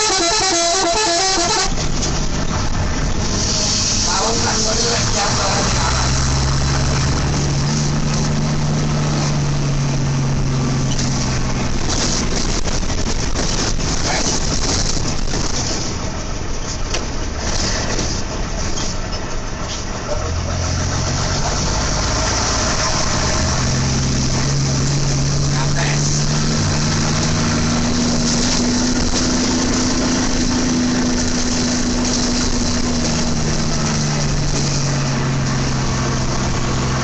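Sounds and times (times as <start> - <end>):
bus engine running: 0.0 - 37.0
broad rushing noise: 1.6 - 16.1.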